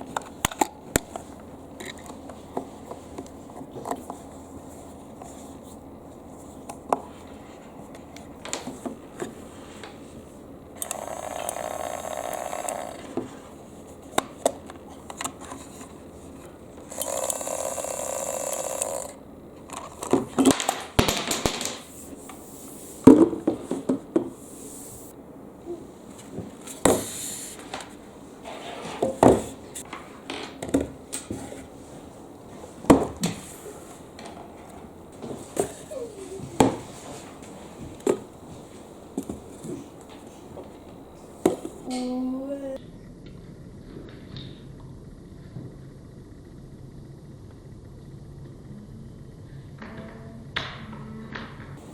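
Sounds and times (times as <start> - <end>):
steady whirring: 0.0 - 20.9.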